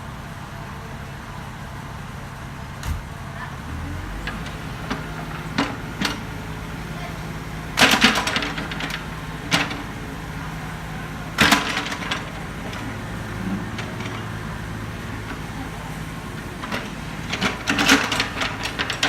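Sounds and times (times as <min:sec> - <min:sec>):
diesel engine running: 0:00.0 - 0:19.0
metallic clanks and knocks: 0:04.2 - 0:15.6.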